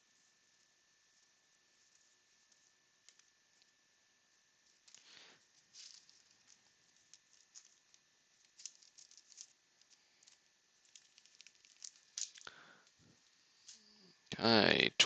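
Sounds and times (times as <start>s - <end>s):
trading cards and wrappers rustling: 4.6s - 14.0s.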